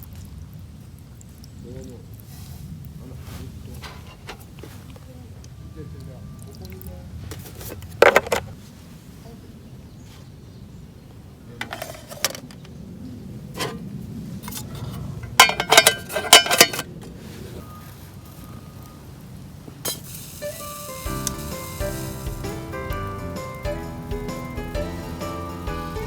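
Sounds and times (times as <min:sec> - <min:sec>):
metal cookware clinking and rattling: 0:11.6 - 0:12.6, 0:15.3 - 0:16.9, 0:19.9 - 0:21.5.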